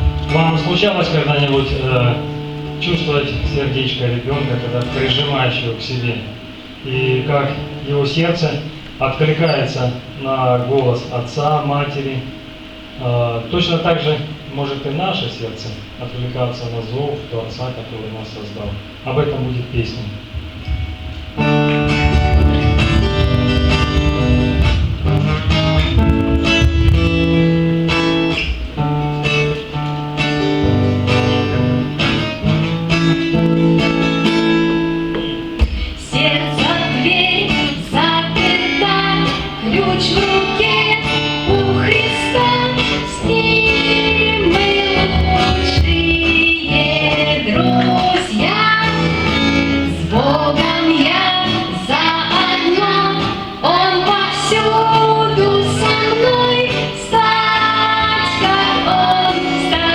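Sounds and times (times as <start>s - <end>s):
guitar accompaniment: 0.0s - 59.9s
woman and children singing: 35.6s - 59.9s.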